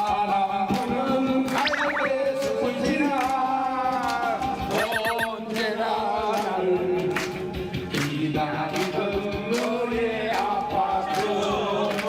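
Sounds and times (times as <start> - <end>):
elderly people singing together: 8.0 - 12.0.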